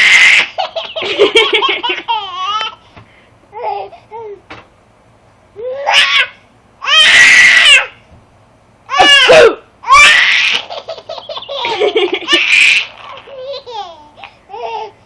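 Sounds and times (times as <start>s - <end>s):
baby laughing: 0.0s - 2.8s, 3.5s - 4.4s, 8.9s - 15.0s.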